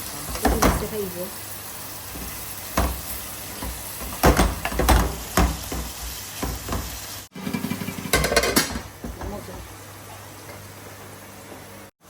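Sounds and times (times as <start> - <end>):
curry sizzling in pot: 0.0 - 11.9
spoon knocking and scraping pot: 2.8 - 9.6.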